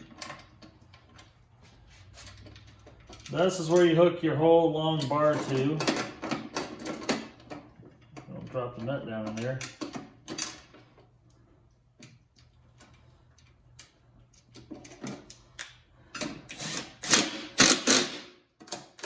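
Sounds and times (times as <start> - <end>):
metal hardware clicks and scrapes: 0.0 - 4.2, 4.8 - 11.1
loud rasping ratchet strokes: 16.5 - 18.3.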